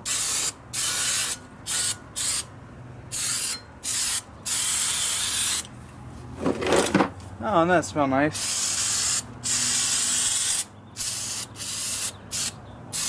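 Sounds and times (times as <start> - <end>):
aerosol spray can spraying: 3.2 - 5.6, 8.4 - 13.0.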